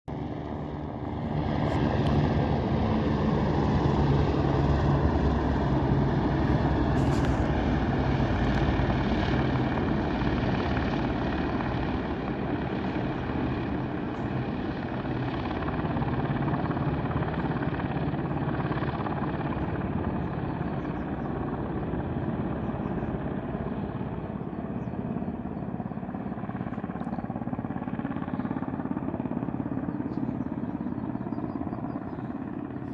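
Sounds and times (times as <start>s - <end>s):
helicopter engine and rotor noise: 0.1s - 32.9s.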